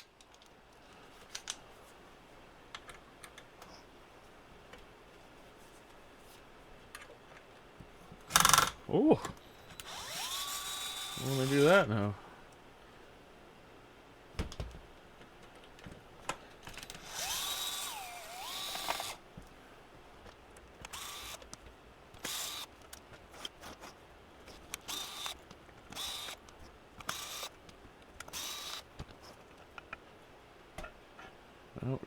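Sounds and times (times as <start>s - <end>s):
electric screwdriver whirring: 8.3s - 8.7s, 9.7s - 11.8s, 17.0s - 19.2s, 20.8s - 21.5s, 22.2s - 23.5s, 24.5s - 27.6s, 28.2s - 29.0s.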